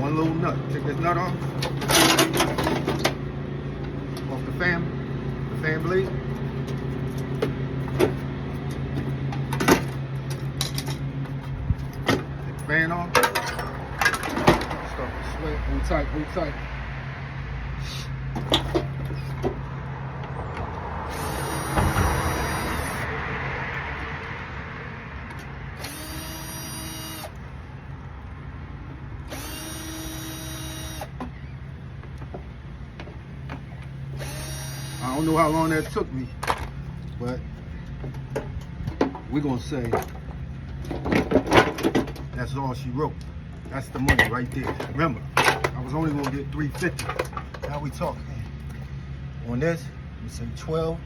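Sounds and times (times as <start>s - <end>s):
low mechanical hum: 0.0s - 17.1s, 17.7s - 51.0s
power drill whining: 21.1s - 23.0s, 25.8s - 27.4s, 29.3s - 31.6s, 34.1s - 35.9s.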